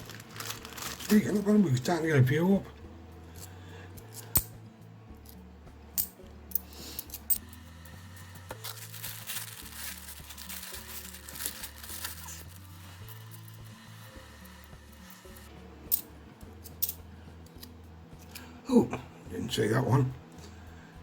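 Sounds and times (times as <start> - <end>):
coins rustling and clinking: 0.0 - 1.5, 3.4 - 4.5, 6.0 - 7.8, 8.4 - 13.6, 15.9 - 17.7
background music: 0.0 - 21.0
coin clicks: 6.0 - 7.4.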